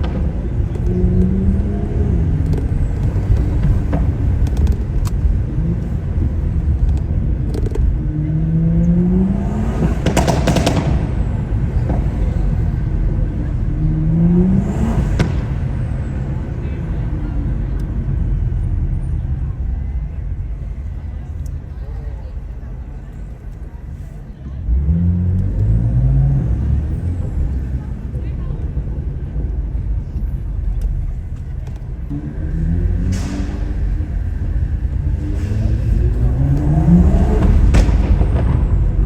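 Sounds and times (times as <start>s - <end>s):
exhaust pops and crackles: 0.0s - 16.8s, 29.7s - 39.0s
car exhaust accelerating: 0.0s - 39.0s
low road rumble: 0.0s - 39.0s.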